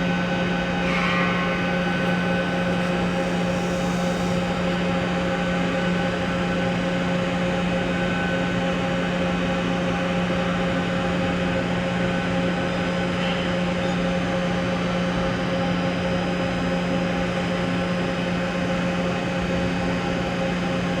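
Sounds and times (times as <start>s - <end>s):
boring mill machine hum: 0.0s - 8.3s.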